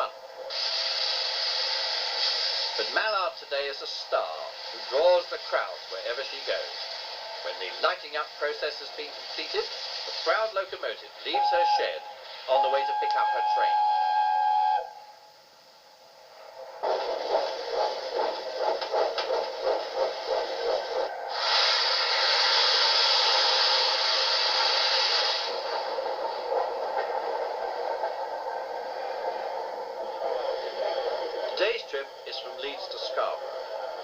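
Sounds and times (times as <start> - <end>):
loud hiss of steam: 0.5 - 14.8, 21.2 - 27.6
steam locomotive exhaust beats: 16.3 - 34.0.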